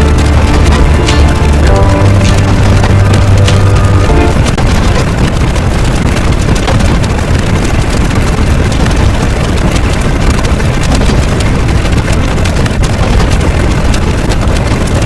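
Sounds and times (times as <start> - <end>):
loud low rumbling: 0.0 - 9.5
faint crackle: 0.0 - 15.0.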